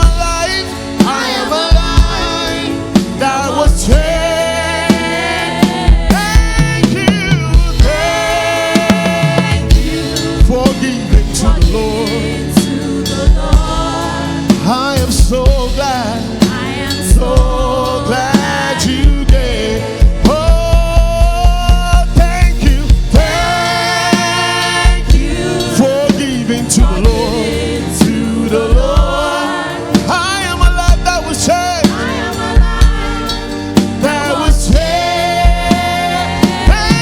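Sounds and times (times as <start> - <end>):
bass drum beats: 0.0 - 37.0
gospel band playing: 0.0 - 37.0.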